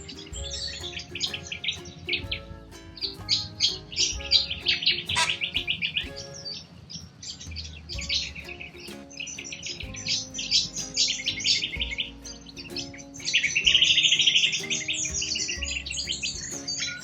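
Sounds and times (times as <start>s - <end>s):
background music with bass: 0.0s - 17.0s
cockatoos chattering: 5.1s - 6.7s.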